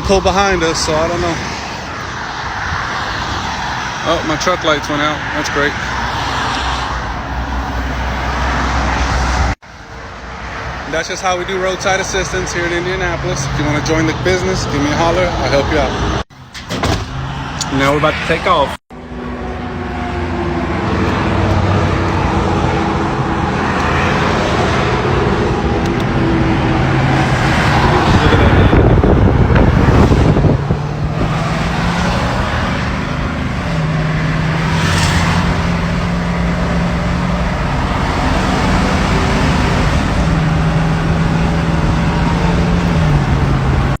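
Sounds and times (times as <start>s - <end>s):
tyre and road noise: 0.0s - 44.0s
rush of noise: 17.6s - 44.0s.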